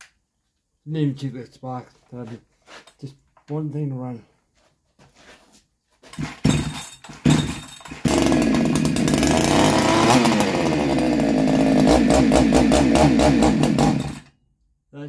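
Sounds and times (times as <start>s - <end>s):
chainsaw pull-start bursts: 6.2s - 14.3s
chainsaw engine running: 6.5s - 14.3s.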